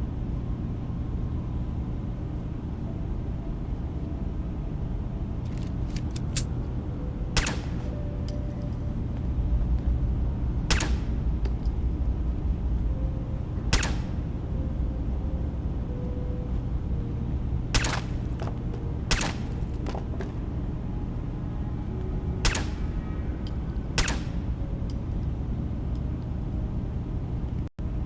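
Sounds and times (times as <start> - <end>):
steady low rumble: 0.0 - 28.0
pistol shots: 7.4 - 8.0, 10.7 - 11.2, 13.8 - 14.4, 17.8 - 18.5, 19.1 - 20.0, 22.4 - 23.1, 24.0 - 24.5.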